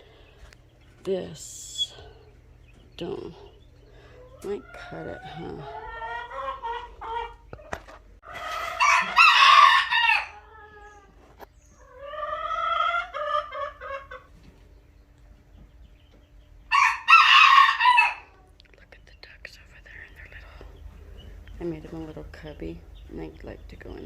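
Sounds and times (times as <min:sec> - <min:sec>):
rooster crowing: 0:08.2 - 0:11.0, 0:16.7 - 0:18.3.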